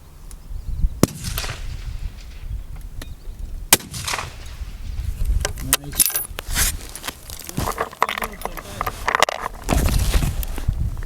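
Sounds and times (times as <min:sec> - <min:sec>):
rifle shots with echo: 0:01.0 - 0:02.5, 0:03.7 - 0:05.0.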